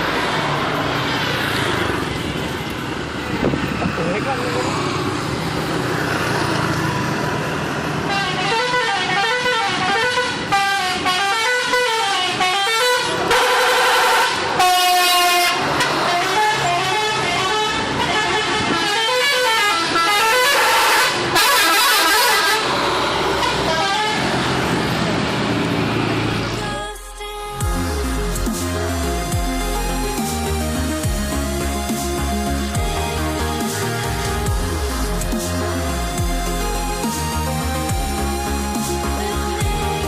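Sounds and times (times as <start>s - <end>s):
bus horns playing melodies: 7.9s - 24.8s, 26.3s - 40.0s
loud held horn blasts: 8.1s - 22.7s, 23.3s - 24.3s.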